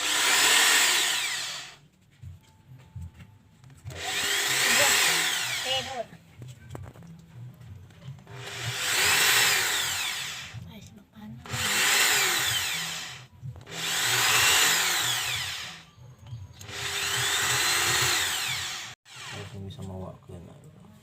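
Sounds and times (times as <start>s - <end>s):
electric drill boring into wood: 0.0s - 1.8s, 3.9s - 6.0s, 8.2s - 10.6s, 11.4s - 15.9s, 16.6s - 19.6s.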